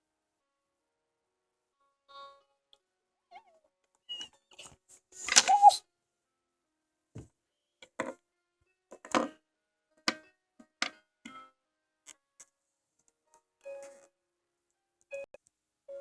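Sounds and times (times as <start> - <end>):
plastic toy figures clicking: 5.3 - 5.8.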